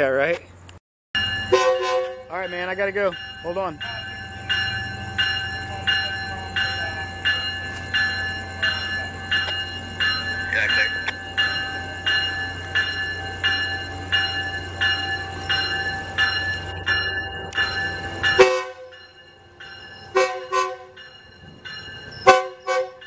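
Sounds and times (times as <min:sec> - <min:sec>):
bell ringing: 0:01.2 - 0:23.0
train air horn blasts: 0:01.5 - 0:02.3, 0:18.4 - 0:18.9, 0:20.1 - 0:21.0, 0:22.2 - 0:23.0.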